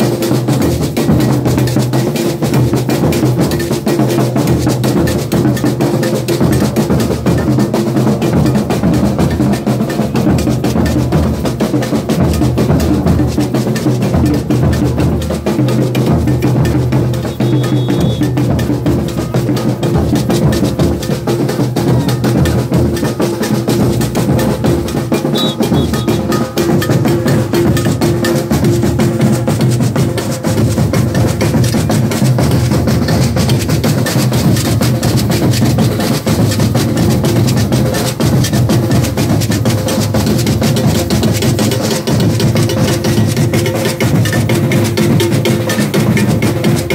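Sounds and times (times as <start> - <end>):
snare drums beating: 0.0 - 46.9
bass drums beating: 14.1 - 41.4.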